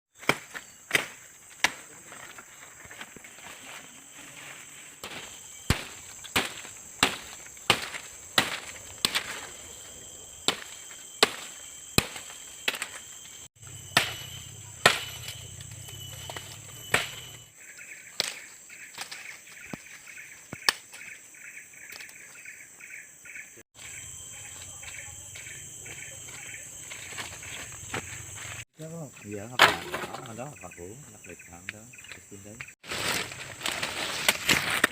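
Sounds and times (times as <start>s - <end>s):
chorus of insects: 0.1s - 34.9s
rapid pulsed chirping: 4.8s - 17.6s.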